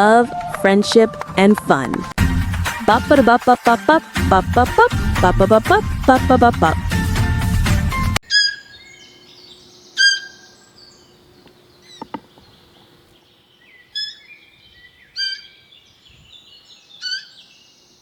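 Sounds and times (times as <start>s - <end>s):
birds chirping: 8.2s - 18.0s
high bird twittering: 8.2s - 18.0s.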